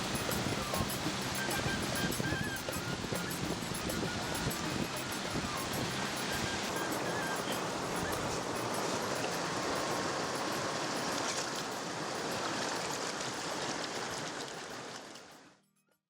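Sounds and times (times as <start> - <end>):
water rushing: 0.0 - 15.4.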